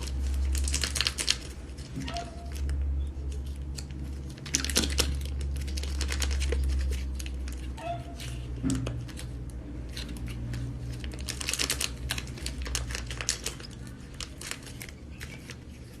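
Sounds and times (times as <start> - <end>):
plastic containers clicking and crinkling: 0.0 - 16.0.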